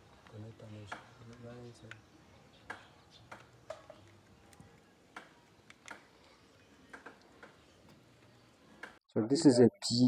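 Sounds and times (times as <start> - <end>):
faint small clicks and taps: 0.2 - 8.0.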